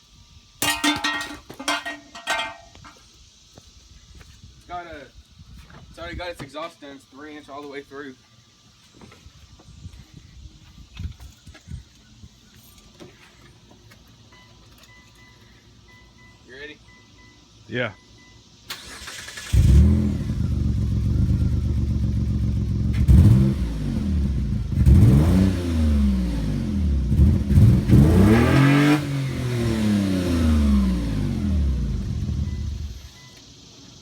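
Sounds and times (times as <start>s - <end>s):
car engine cranking: 18.7s - 23.4s
car engine revving: 19.1s - 32.8s.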